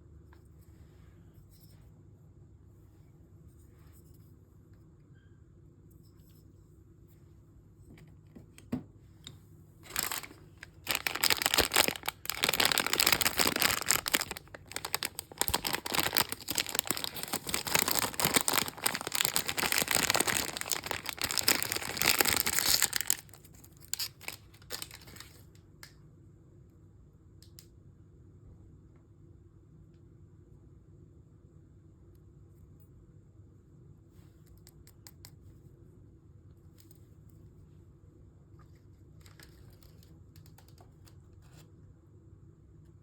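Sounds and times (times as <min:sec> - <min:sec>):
packaging crinkling and tearing: 0:09.8 - 0:25.4.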